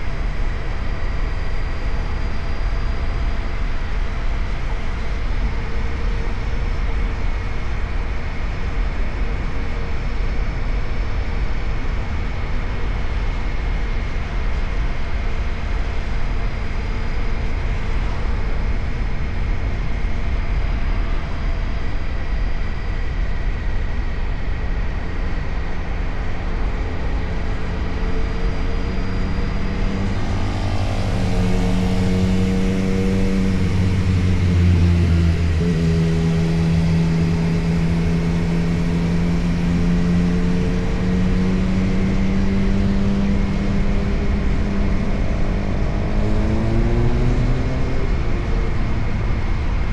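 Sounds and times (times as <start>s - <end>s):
high-pitched whine: 0.0s - 49.9s
motorcycle engine running: 26.4s - 49.8s.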